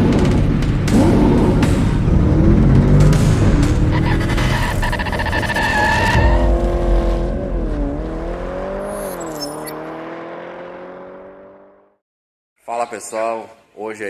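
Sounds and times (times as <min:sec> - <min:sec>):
intro music: 0:00.0 - 0:09.3
engine revving: 0:00.0 - 0:12.0
tyres squealing: 0:03.9 - 0:06.4.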